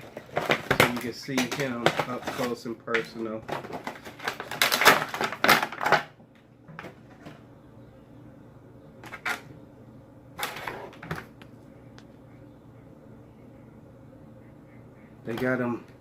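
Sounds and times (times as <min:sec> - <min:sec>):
plastic packaging crinkling: 0:00.0 - 0:06.1.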